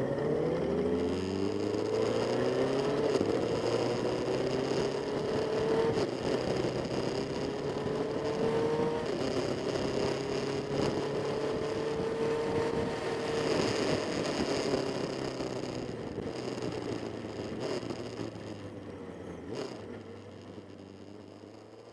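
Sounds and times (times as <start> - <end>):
motorcycle engine accelerating: 0.0 - 21.9.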